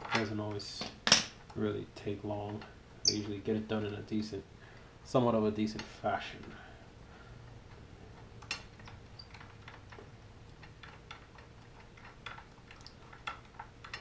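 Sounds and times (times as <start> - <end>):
metal tools clicking and tapping: 7.6 - 14.0.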